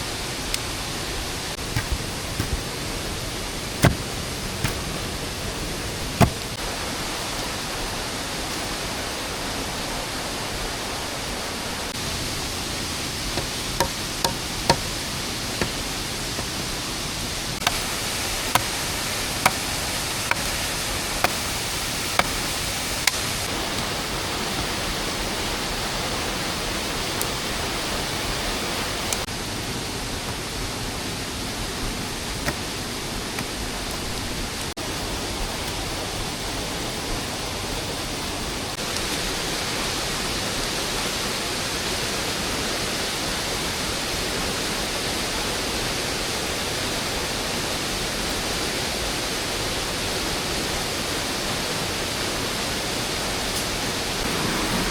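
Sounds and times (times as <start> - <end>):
rain hissing: 0.0 - 54.9
sharp knocks: 1.7 - 2.6, 3.8 - 5.0, 13.4 - 15.0.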